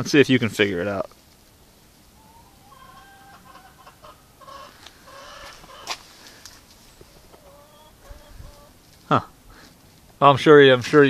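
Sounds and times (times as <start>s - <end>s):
chickens clucking: 2.0s - 9.8s.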